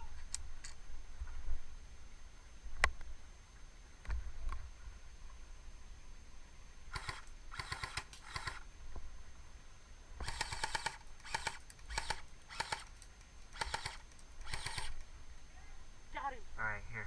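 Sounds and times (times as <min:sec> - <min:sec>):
airsoft gun full-auto bursts: 0:06.9 - 0:08.6, 0:10.2 - 0:12.9, 0:13.5 - 0:15.0.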